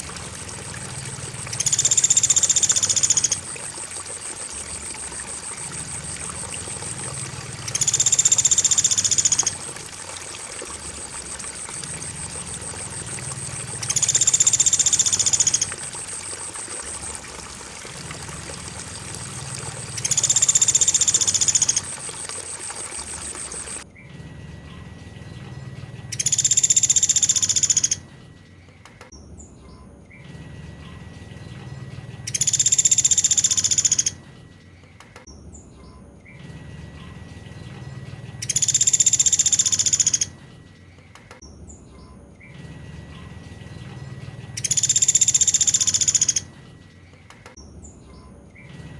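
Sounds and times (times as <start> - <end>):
running water: 0.0 - 23.9
cricket chirring: 0.0 - 28.2, 30.1 - 34.5, 36.4 - 40.7, 42.0 - 46.8.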